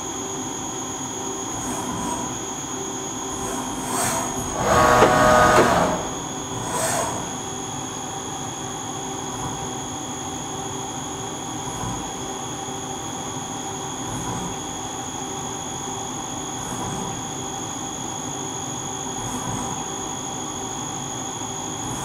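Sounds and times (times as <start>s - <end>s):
high-pitched machine whine: 0.0s - 10.0s
short rushes of noise: 4.0s - 7.3s.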